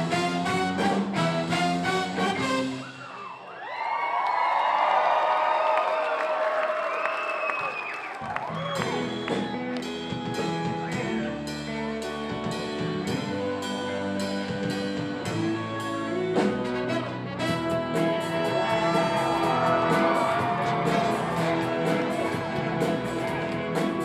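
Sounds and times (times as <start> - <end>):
drum kit beat: 0.0 - 2.8, 8.7 - 24.0
brass horns playing: 0.0 - 3.1, 15.9 - 24.0.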